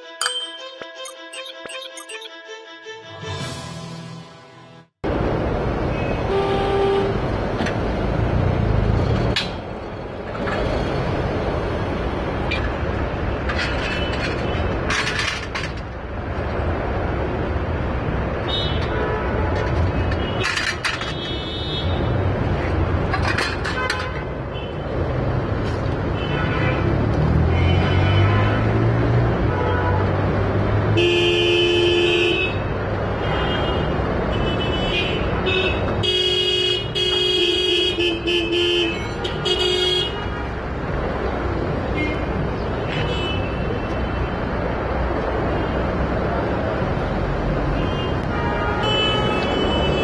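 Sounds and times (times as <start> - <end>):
rumble of vehicles: 3.2 - 50.0
car horn toot: 6.0 - 7.2.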